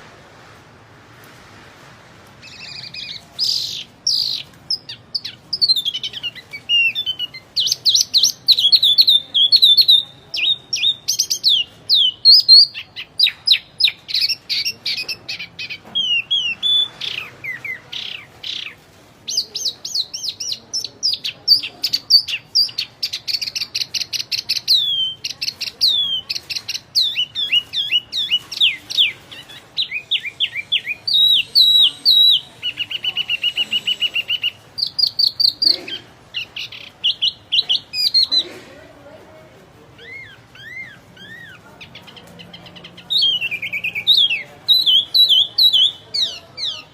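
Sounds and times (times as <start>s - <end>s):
songbird singing: 2.4s - 38.6s, 39.9s - 46.9s.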